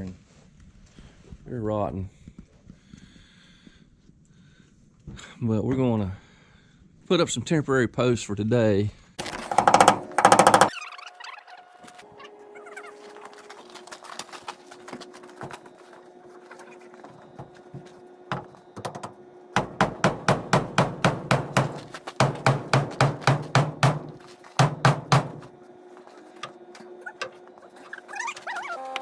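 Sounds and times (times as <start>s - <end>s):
hammer striking wood: 9.4s - 10.8s, 18.3s - 25.5s.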